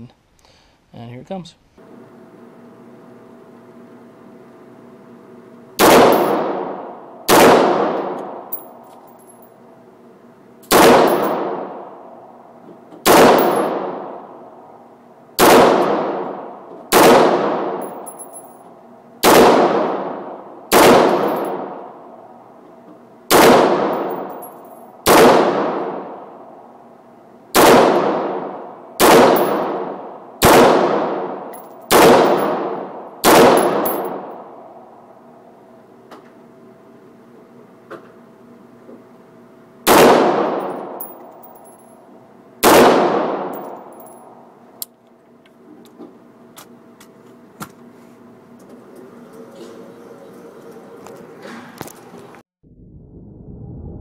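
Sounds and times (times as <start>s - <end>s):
rifle shots with echo: 5.8s - 8.6s, 10.7s - 12.1s, 13.0s - 14.4s, 15.4s - 18.0s, 19.2s - 22.0s, 23.3s - 26.3s, 27.6s - 34.6s, 39.9s - 41.6s, 42.6s - 44.3s.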